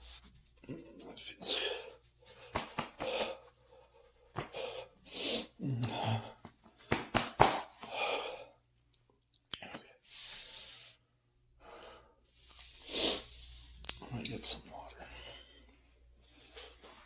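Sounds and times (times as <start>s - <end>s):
man breathing hard: 1.4s - 7.1s, 7.8s - 8.6s.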